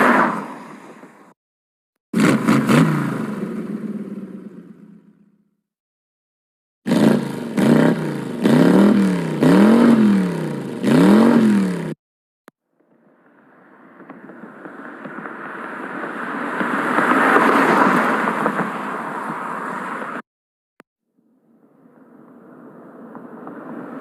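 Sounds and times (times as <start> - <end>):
car engine revving: 2.2 - 5.0, 6.9 - 12.0.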